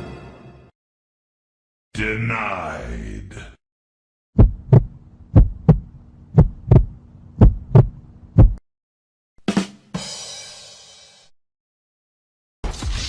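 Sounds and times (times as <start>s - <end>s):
heartbeat thumps: 4.4s - 8.6s.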